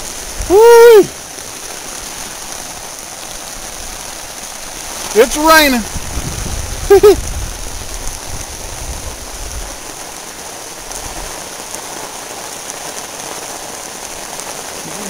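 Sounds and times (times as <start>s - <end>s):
heavy rain falling: 0.0s - 15.0s
low rumble on microphone: 5.9s - 9.6s.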